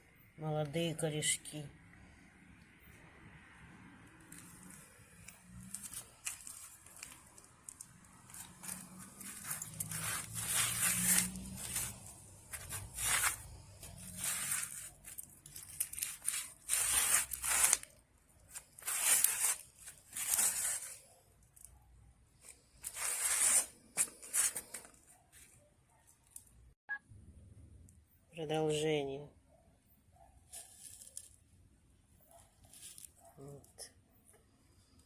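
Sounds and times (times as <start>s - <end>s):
crisp rustling strokes: 4.2s - 21.2s, 22.4s - 25.5s, 30.5s - 31.4s.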